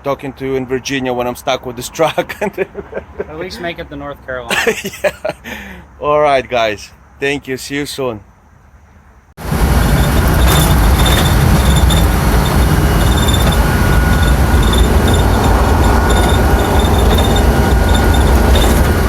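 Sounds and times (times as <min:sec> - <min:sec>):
van engine and road rumble: 0:00.0 - 0:19.0
van body squeaks and rattles: 0:09.4 - 0:19.0.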